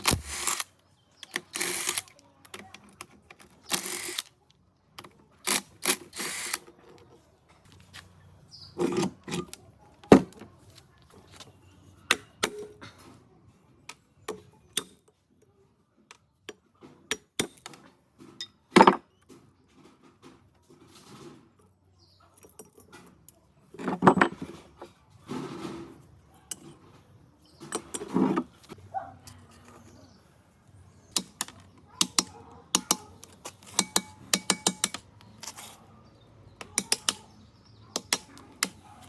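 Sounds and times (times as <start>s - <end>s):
metal tools clinking: 32.8s - 35.8s.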